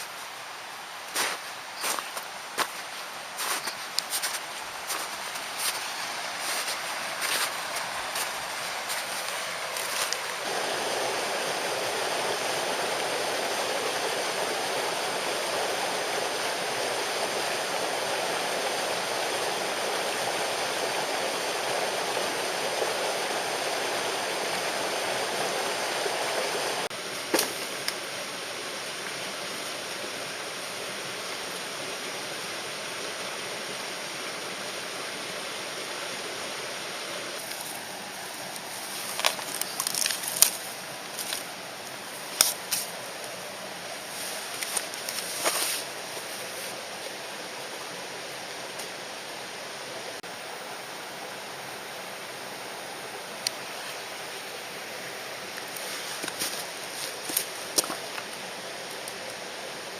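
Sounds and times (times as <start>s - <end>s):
stream flowing over rocks: 0.0s - 59.9s.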